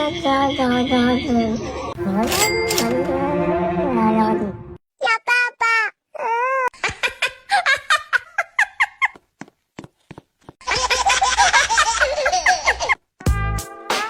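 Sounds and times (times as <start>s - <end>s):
high-pitched cackling laughter: 6.7s - 9.2s, 10.6s - 13.0s.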